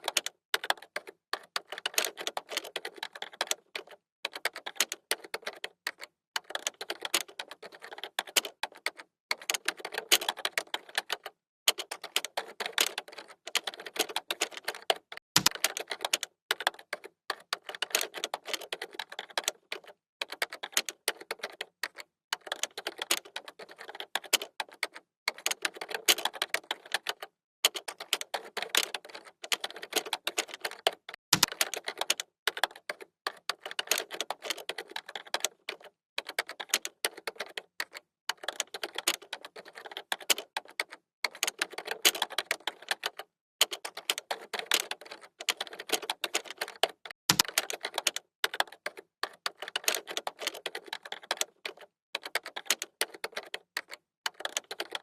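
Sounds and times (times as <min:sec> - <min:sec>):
keyboard typing: 0:00.0 - 0:55.0.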